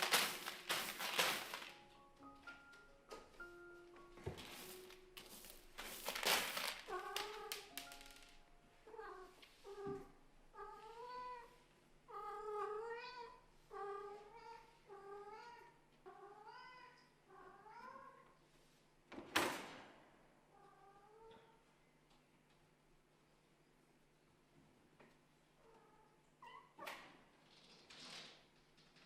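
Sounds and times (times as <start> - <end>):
rustling: 0.0 - 2.0, 4.3 - 8.5.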